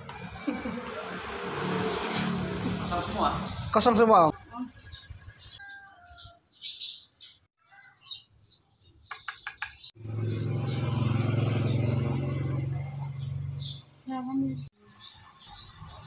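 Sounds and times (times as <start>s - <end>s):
birds chirping: 0.1s - 16.0s
loud steady motor hum: 10.0s - 13.4s.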